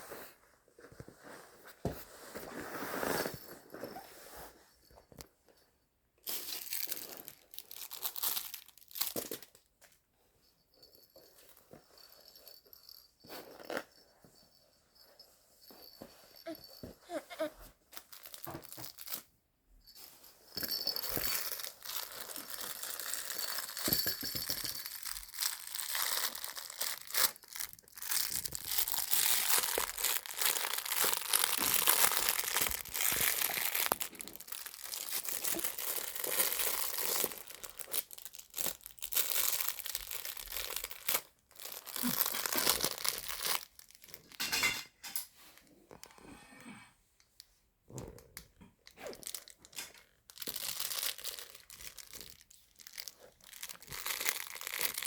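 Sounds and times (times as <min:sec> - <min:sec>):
cloth book pages crinkling: 0:06.5 - 0:09.6, 0:15.8 - 0:19.3, 0:20.7 - 0:24.0, 0:24.6 - 0:44.4, 0:49.0 - 0:55.0.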